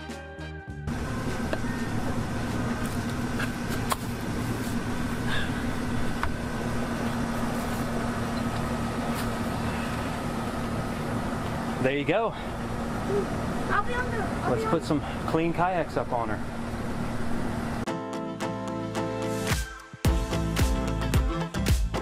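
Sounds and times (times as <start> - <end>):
mechanical hum: 0.9 - 17.8.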